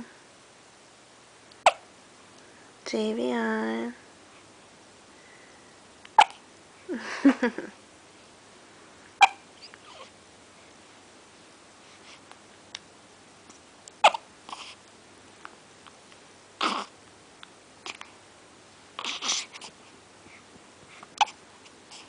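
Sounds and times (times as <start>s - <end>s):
baby hiccuping: 1.6s - 1.9s, 6.2s - 6.4s, 9.2s - 10.1s, 14.0s - 14.6s, 16.6s - 16.9s, 19.0s - 19.5s, 21.2s - 21.4s
breath: 5.2s - 5.8s.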